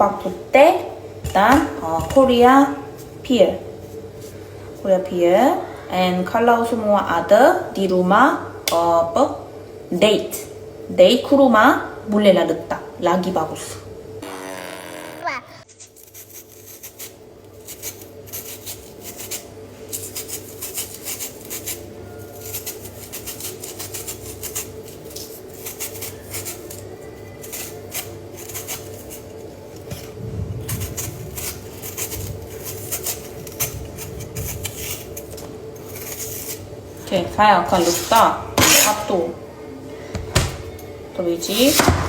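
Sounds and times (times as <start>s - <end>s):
steady low hum: 0.0s - 15.7s.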